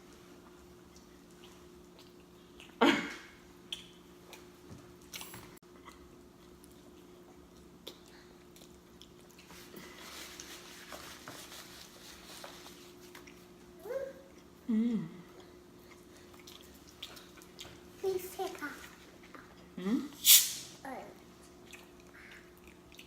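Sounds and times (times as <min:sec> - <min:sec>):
chewing and lip-smacking: 0:00.4 - 0:02.8, 0:03.6 - 0:09.7, 0:13.0 - 0:13.6, 0:15.4 - 0:18.0, 0:21.4 - 0:23.0
wet mouth clicks: 0:03.7 - 0:04.4.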